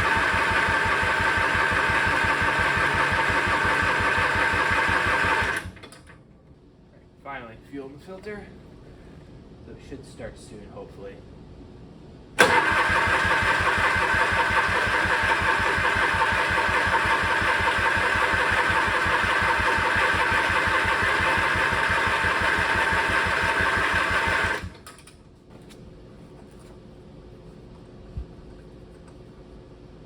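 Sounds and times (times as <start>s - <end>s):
starter cranking engine: 0.0s - 5.9s, 12.4s - 25.0s.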